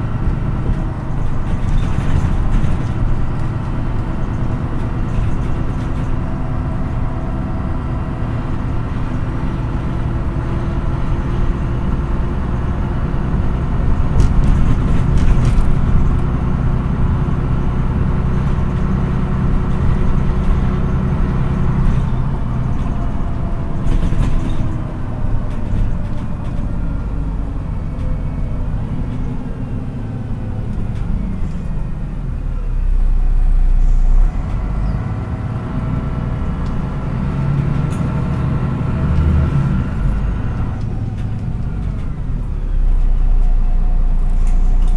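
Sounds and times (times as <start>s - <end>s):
bus diesel engine running: 0.0s - 44.9s
low rumble: 0.0s - 44.9s
sharp knocks and rattles: 0.2s - 6.4s.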